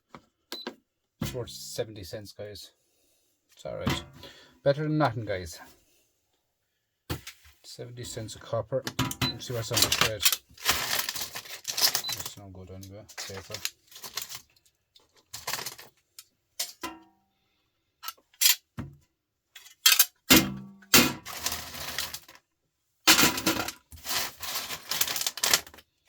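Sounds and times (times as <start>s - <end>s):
metal parts clinking and clattering: 9.7s - 12.3s, 18.0s - 18.6s, 19.6s - 20.3s, 21.2s - 22.4s, 23.1s - 25.8s.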